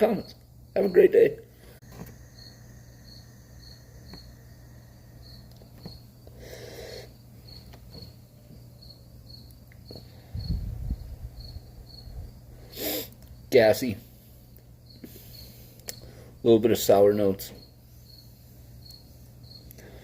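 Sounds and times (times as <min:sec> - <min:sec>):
cricket chirping: 0:00.0 - 0:20.0
low steady hum: 0:00.0 - 0:20.0
short hiss: 0:12.6 - 0:13.2.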